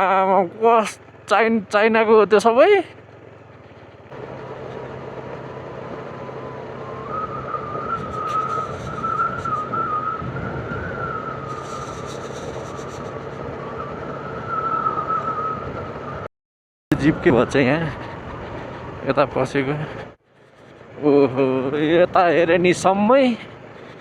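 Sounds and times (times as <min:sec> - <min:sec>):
motorcycle engine hum: 0:00.0 - 0:16.3, 0:16.9 - 0:24.0
wavering whistling tone: 0:06.0 - 0:16.3
wind noise: 0:07.1 - 0:16.2.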